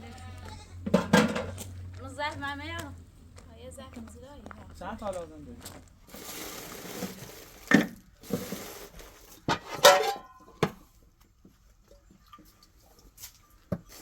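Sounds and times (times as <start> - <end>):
kitchen vessels clattering: 0.9 - 1.6, 9.4 - 10.8.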